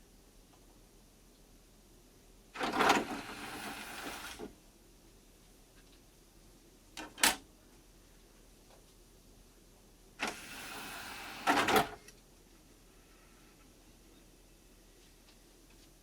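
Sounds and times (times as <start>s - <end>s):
motorised cd tray running: 2.6s - 4.5s, 10.2s - 12.0s.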